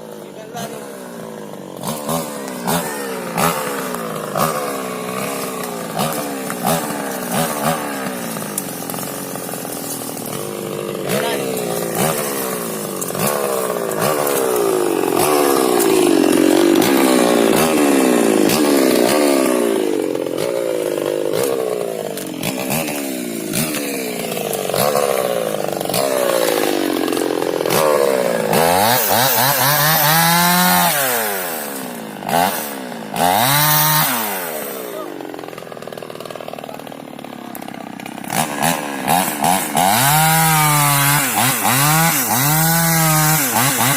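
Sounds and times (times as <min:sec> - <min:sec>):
chainsaw cutting wood: 0:00.0 - 0:43.9.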